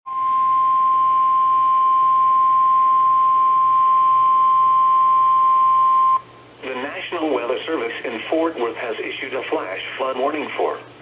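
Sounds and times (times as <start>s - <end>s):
steady warning beep: 0.1s - 6.3s
faint receiver hum: 0.1s - 11.0s.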